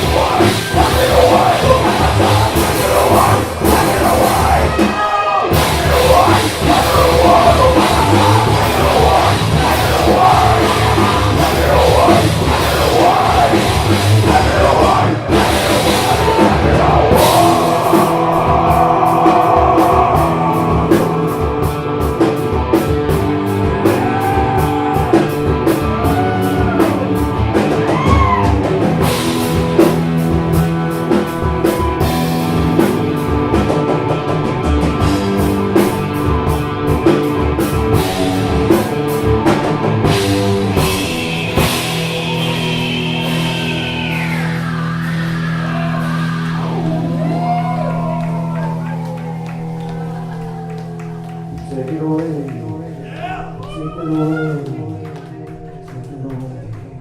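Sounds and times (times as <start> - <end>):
person singing or shouting: 0.0 - 21.7, 23.8 - 28.7, 53.0 - 55.0
fast drum beat: 0.0 - 43.8
live rock band playing: 0.0 - 56.6.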